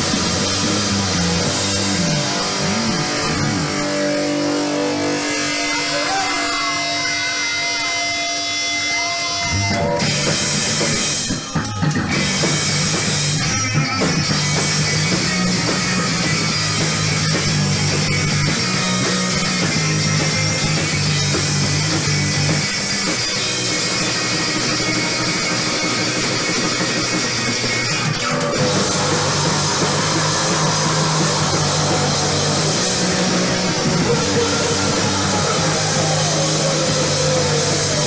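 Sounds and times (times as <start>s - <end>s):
live rock band: 0.0s - 38.0s
held electric guitar tone: 28.3s - 38.0s.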